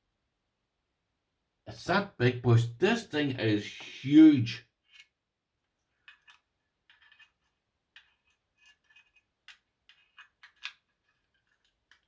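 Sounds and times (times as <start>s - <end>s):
padlock clicking and scraping: 6.0s - 12.0s.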